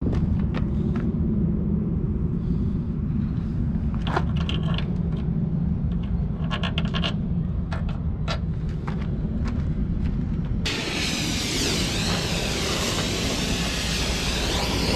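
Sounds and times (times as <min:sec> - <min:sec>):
diesel engine running: 0:03.5 - 0:14.9.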